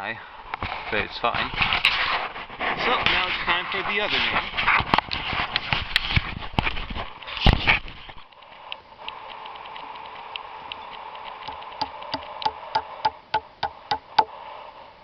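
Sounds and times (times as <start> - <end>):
hammer hitting nail into wood: 11.8 - 14.3.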